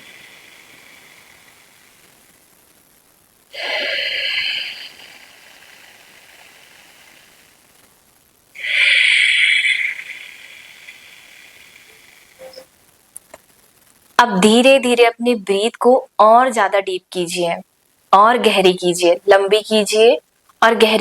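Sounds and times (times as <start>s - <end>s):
person breathing deeply: 3.6s - 7.6s, 8.6s - 12.4s.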